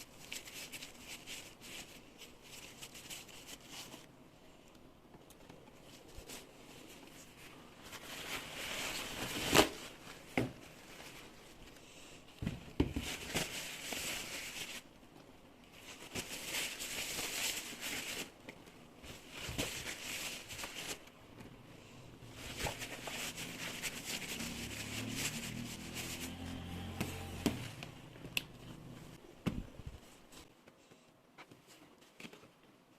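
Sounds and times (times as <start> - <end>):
plastic bags rustling: 5.9 - 11.8, 15.7 - 21.5, 22.2 - 27.8.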